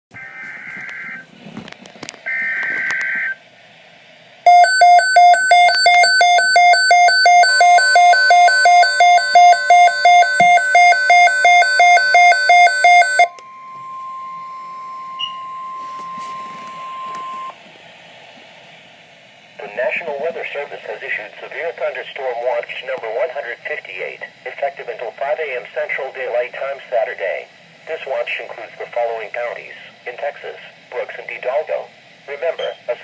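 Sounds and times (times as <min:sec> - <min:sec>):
electronic alert beeping: 0:04.5 - 0:17.5
warbling data tones: 0:04.5 - 0:17.5
steady warning tone: 0:04.5 - 0:17.6.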